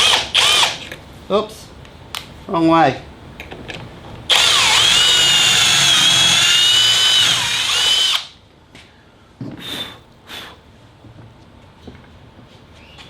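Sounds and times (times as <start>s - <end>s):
power drill whining: 0.0s - 0.8s, 4.3s - 8.3s.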